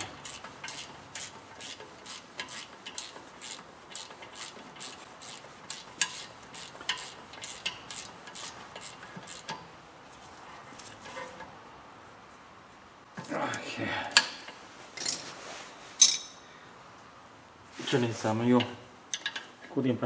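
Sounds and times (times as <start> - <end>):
wrench clicking on metal bolt: 0.0 - 9.6, 18.6 - 19.5.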